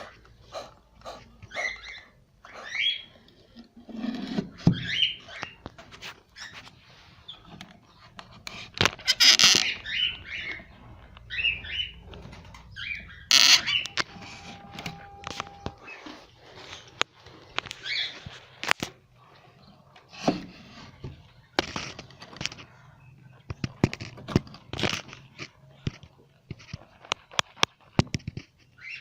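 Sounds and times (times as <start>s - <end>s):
cockatiels chirping: 0.0s - 3.1s, 4.8s - 5.6s, 9.0s - 16.0s, 17.7s - 18.3s, 28.8s - 29.0s.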